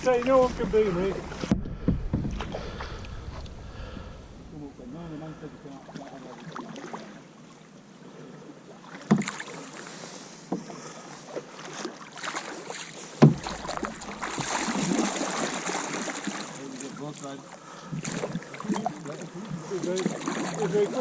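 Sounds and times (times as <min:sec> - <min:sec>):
paddle strokes splashing: 0:00.0 - 0:04.2, 0:04.8 - 0:07.8, 0:08.7 - 0:21.0
sharp knocks on canoe: 0:01.4 - 0:03.5, 0:09.0 - 0:09.4, 0:13.2 - 0:15.0.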